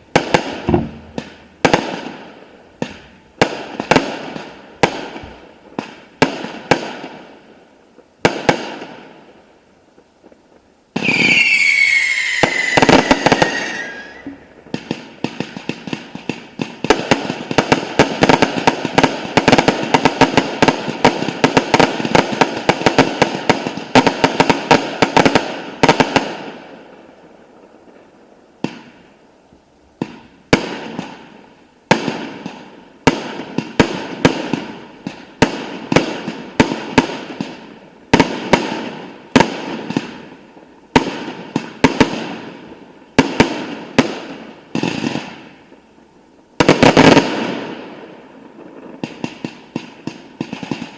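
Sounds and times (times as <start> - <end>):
fireworks bangs and crackling: 0.0 - 50.9.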